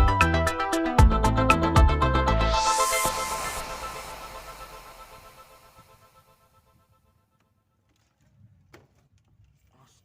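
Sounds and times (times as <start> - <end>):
background music: 0.0 - 6.8.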